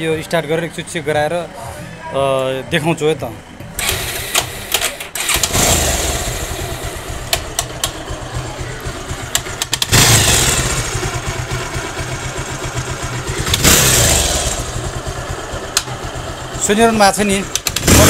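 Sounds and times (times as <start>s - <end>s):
motorcycle engine revving: 3.8s - 18.0s
engine popping and knocking: 5.4s - 18.0s.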